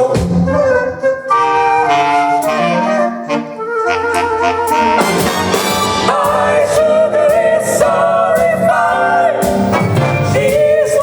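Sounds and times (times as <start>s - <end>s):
swing big band playing: 0.0s - 11.0s.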